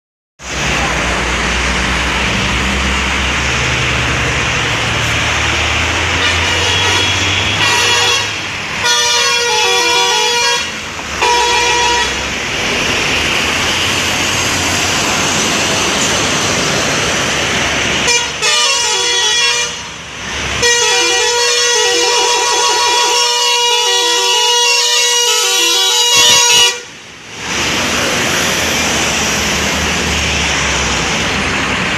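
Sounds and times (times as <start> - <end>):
loud rushing noise: 0.4 - 18.5, 26.1 - 31.9
multi-tone musical air horn: 6.2 - 12.2, 18.0 - 20.0, 20.6 - 26.9.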